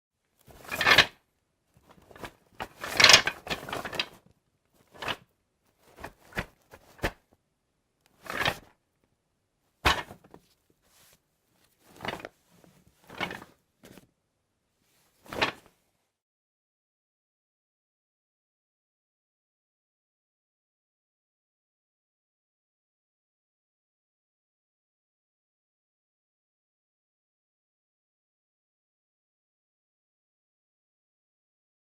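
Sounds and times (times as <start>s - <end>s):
bag rustling and shuffling: 0.4s - 1.1s, 1.8s - 7.2s, 9.9s - 14.1s.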